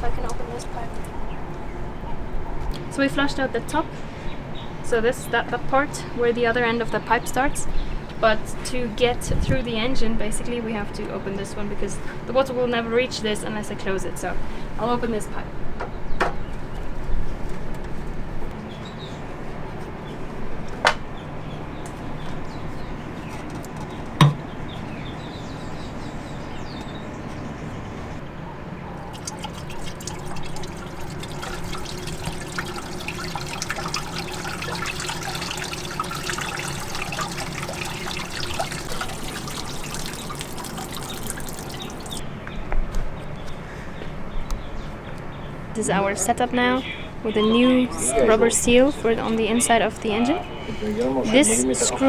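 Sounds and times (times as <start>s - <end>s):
water running and splashing: 29.0s - 42.2s.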